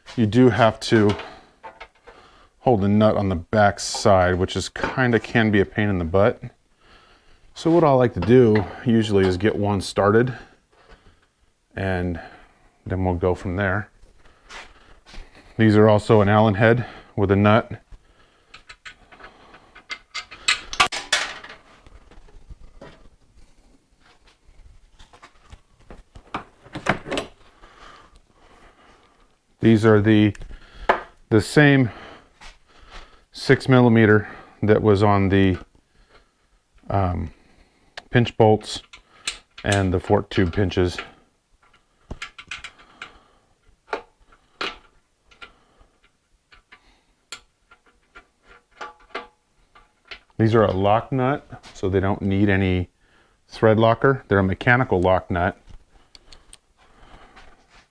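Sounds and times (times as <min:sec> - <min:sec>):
tools and fasteners clinking: 0:00.6 - 0:02.2, 0:03.7 - 0:05.4, 0:08.2 - 0:09.4, 0:18.5 - 0:23.1, 0:38.8 - 0:43.2, 0:43.8 - 0:50.8.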